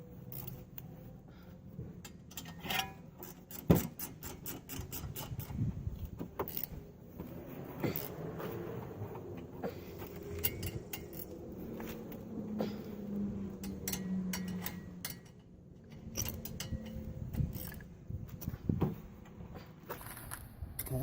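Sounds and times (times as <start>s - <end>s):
metal tools clinking and scraping: 2.0s - 5.6s, 9.7s - 18.6s.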